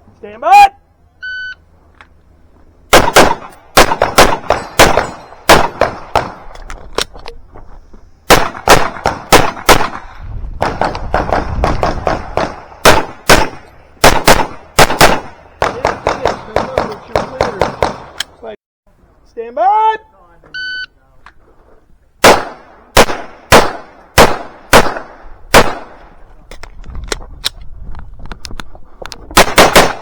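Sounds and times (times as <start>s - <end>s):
pistol shots: 2.9s - 6.6s, 8.3s - 18.2s, 22.2s - 26.2s, 29.3s - 30.0s.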